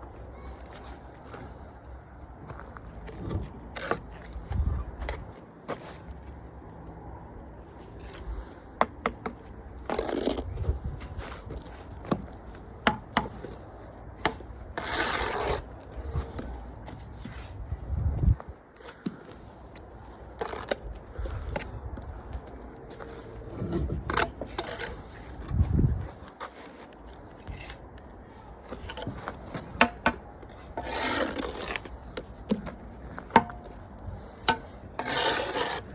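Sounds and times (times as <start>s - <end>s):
trowel scraping mortar: 9.8s - 12.2s, 14.2s - 17.6s, 20.4s - 21.6s, 23.0s - 25.4s, 28.7s - 32.3s, 34.2s - 35.9s.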